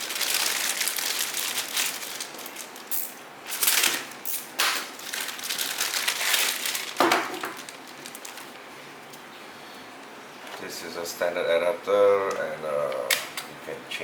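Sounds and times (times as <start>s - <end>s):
plastic packaging crinkling: 0.0s - 8.7s.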